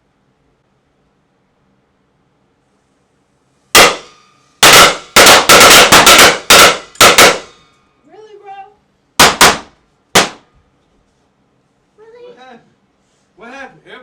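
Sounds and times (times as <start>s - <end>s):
firecrackers banging: 3.8s - 7.6s, 9.2s - 10.5s.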